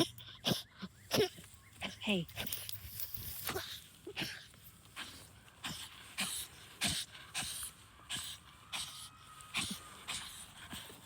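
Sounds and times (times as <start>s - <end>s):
dog snorting and huffing: 3.5s - 9.0s.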